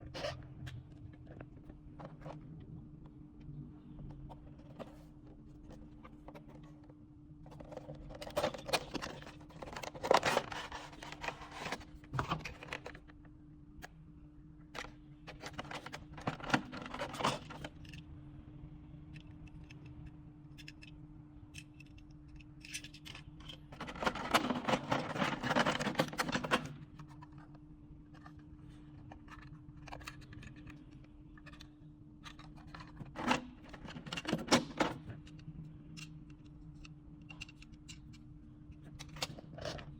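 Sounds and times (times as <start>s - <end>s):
faint steady hum: 0.0s - 39.9s
packaging scraping and rustling: 7.6s - 13.0s.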